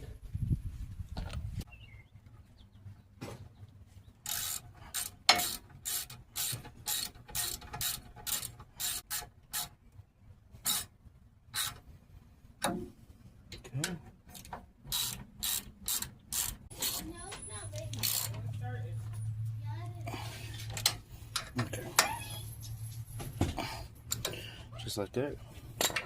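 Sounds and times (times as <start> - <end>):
ratchet wrench clicking: 4.2 - 9.7, 14.4 - 17.1, 17.8 - 18.4.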